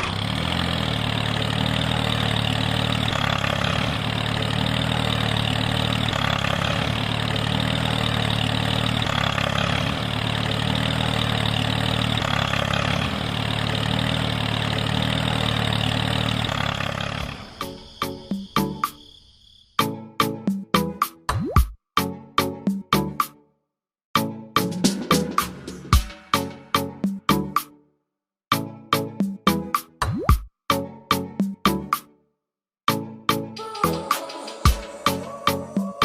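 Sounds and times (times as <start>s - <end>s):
engine idling: 0.0s - 18.6s.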